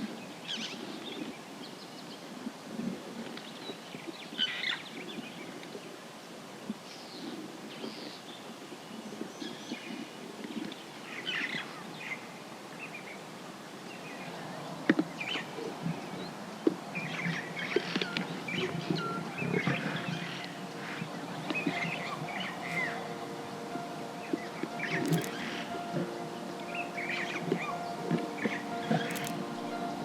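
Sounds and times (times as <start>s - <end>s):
birds chirping and calling: 17.0s - 30.0s
sharp clicks: 24.9s - 25.5s, 28.8s - 29.5s.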